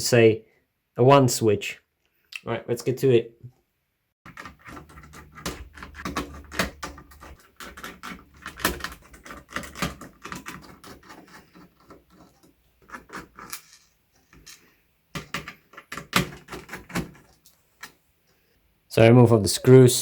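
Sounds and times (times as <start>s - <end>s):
hard plastic clicks and rattles: 4.3s - 13.7s.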